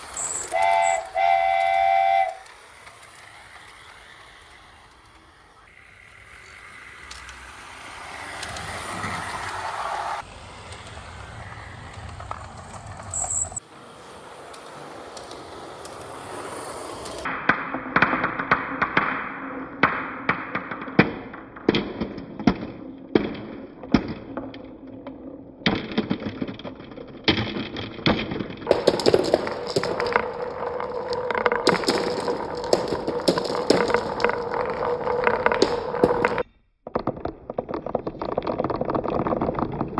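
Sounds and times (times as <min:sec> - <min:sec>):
glass marbles rolling and clicking: 0:00.0 - 0:01.2, 0:02.3 - 0:17.3, 0:24.0 - 0:39.9.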